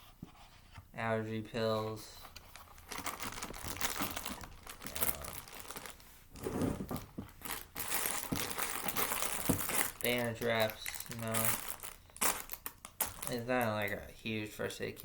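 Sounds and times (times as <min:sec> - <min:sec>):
packaging crinkling and rustling: 0:02.2 - 0:13.5.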